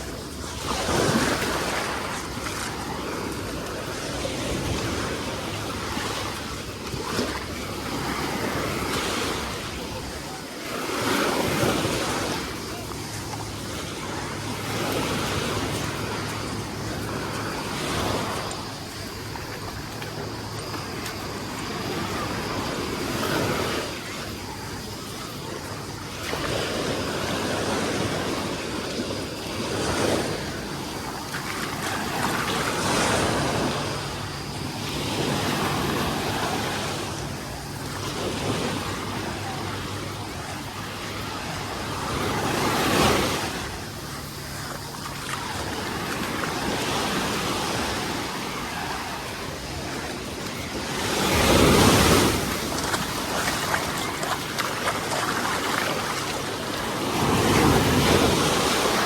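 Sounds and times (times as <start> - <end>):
sea waves breaking on beach: 0.0 - 59.0.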